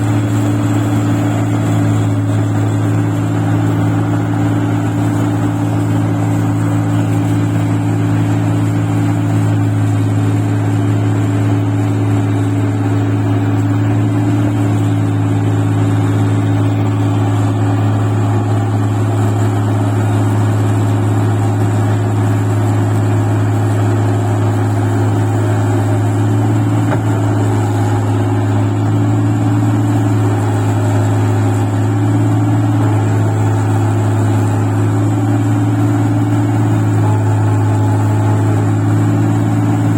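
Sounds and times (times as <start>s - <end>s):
machine engine droning: 0.0s - 39.9s.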